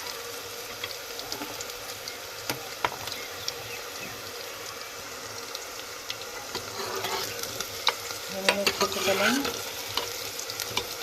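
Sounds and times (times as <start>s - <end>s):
mince sizzling in hot oil: 0.0s - 11.0s.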